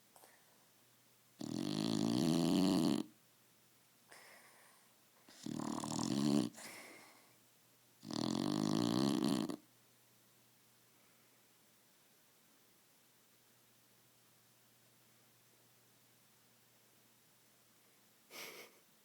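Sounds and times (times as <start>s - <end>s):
dog snoring: 1.4s - 3.1s, 5.3s - 6.9s, 8.0s - 9.6s.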